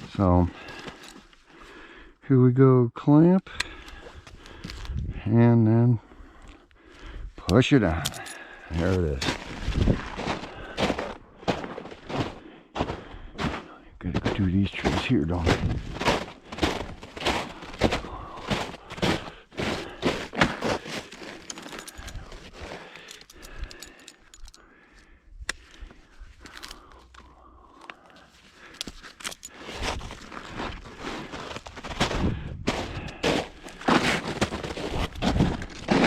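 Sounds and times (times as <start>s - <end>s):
footsteps walking: 7.9s - 24.6s, 25.6s - 36.0s.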